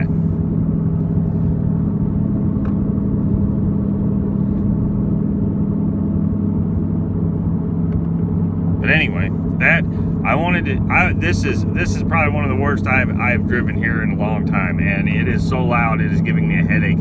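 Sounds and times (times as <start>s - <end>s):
road noise: 0.0s - 2.6s, 6.2s - 17.0s.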